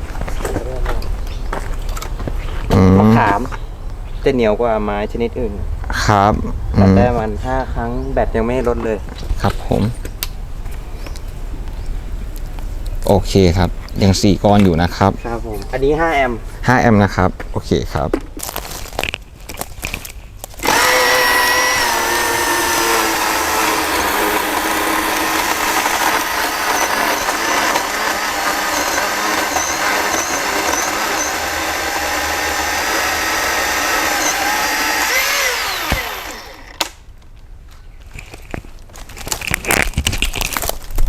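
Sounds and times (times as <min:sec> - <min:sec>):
battery chainsaw whining: 0:20.6 - 0:36.9.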